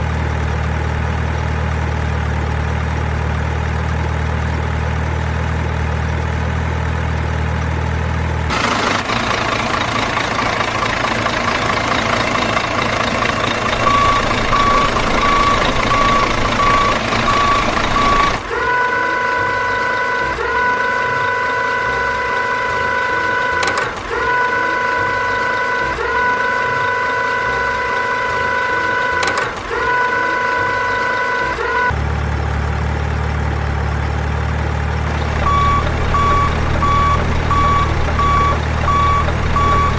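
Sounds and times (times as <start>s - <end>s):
truck engine idling: 0.0s - 31.3s, 31.9s - 39.9s
reversing alarm beeping: 13.6s - 22.2s, 35.1s - 39.9s.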